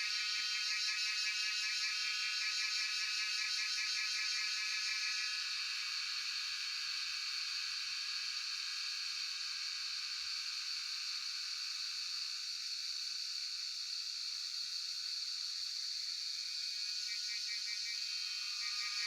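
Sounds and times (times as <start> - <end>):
cicadas buzzing: 16.6 - 19.0.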